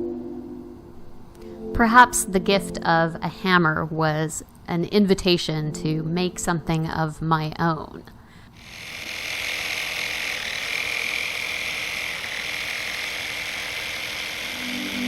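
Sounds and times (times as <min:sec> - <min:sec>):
electric power tool whirring: 0:08.5 - 0:15.0.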